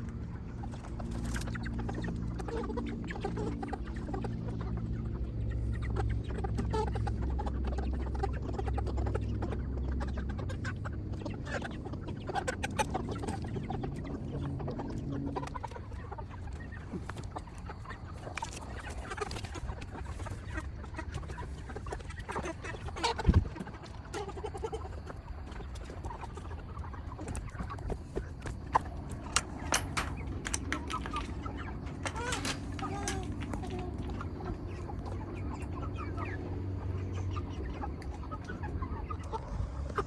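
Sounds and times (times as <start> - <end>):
chickens clucking: 0.1 - 40.0
knocks and handling noise: 28.4 - 34.2.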